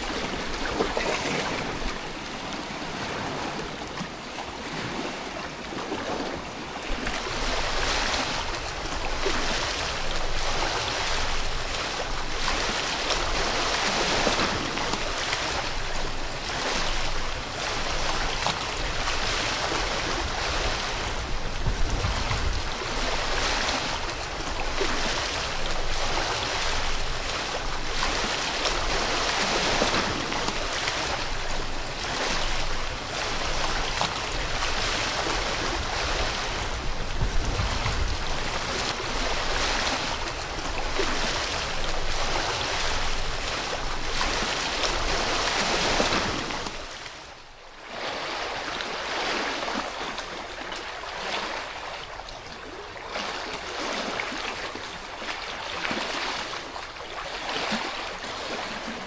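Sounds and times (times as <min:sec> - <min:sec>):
wind buffeting microphone: 0:00.0 - 0:46.6
river rushing: 0:00.0 - 0:47.0, 0:54.0 - 0:59.0.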